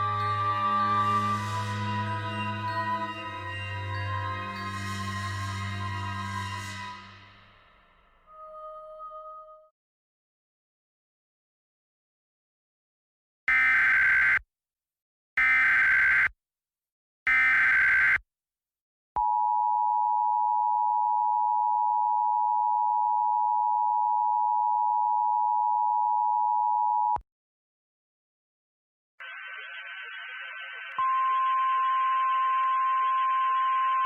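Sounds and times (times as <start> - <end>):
two-tone attention signal: 31.0 - 34.0.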